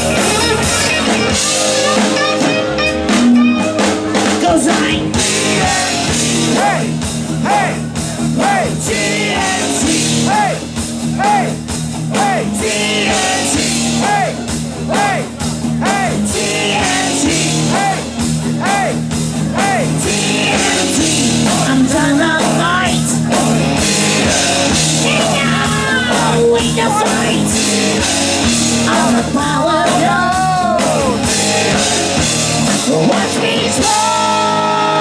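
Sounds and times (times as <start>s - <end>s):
hard rock music with singing: 0.0s - 35.0s.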